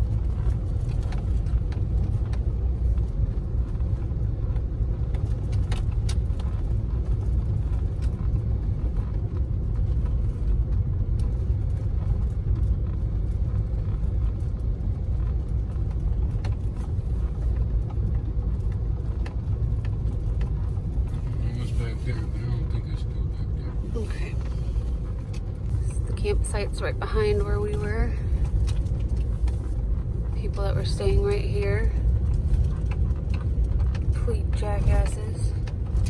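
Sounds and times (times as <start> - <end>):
car engine and tyre rumble: 0.0 - 36.0
faint clicks and ticks: 4.5 - 21.6.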